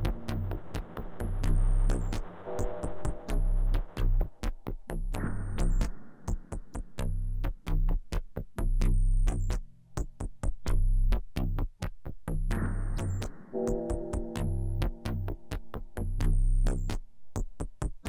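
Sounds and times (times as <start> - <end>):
deep synthesizer bass: 0.0 - 5.9, 13.6 - 16.9
experimental electronic music: 0.0 - 9.6, 12.8 - 17.0.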